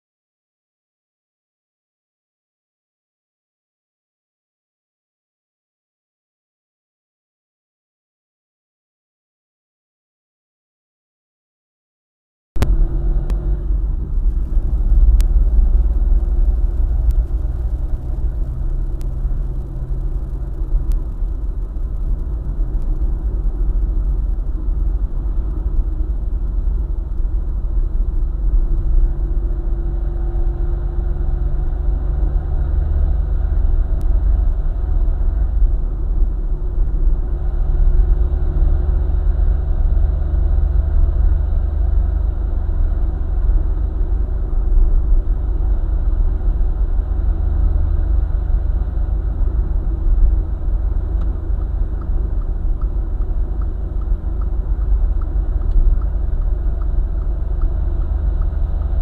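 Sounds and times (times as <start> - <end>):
car engine and road rumble: 12.6 - 59.0.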